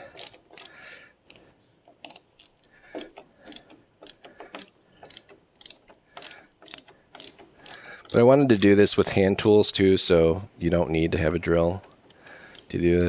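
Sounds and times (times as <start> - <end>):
bit scraping in screw heads: 0.0 - 0.8, 2.0 - 10.0
ratcheting hand driver clicking: 0.0 - 10.1, 11.5 - 13.0.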